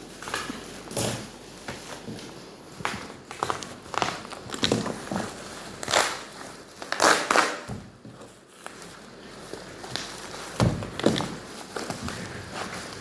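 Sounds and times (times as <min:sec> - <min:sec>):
packaging crinkling: 0:03.0 - 0:13.0.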